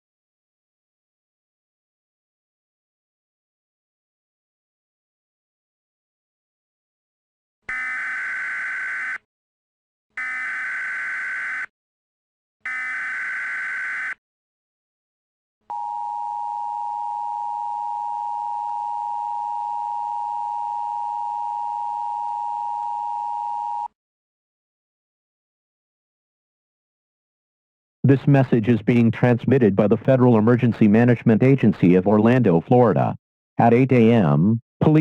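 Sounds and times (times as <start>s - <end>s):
two-tone attention signal: 15.7s - 23.9s.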